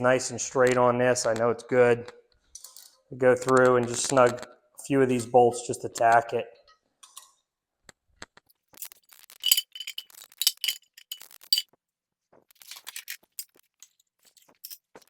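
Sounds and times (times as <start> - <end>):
metallic tool clinks and taps: 9.4 - 11.7, 12.8 - 15.0.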